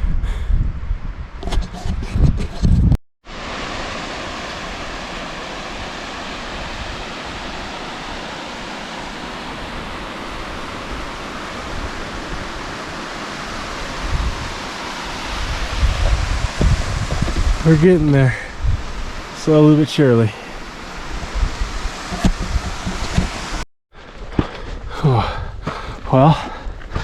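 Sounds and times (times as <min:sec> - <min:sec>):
wind buffeting microphone: 0:00.0 - 0:03.0, 0:13.7 - 0:23.6
running water rushing: 0:03.3 - 0:23.6.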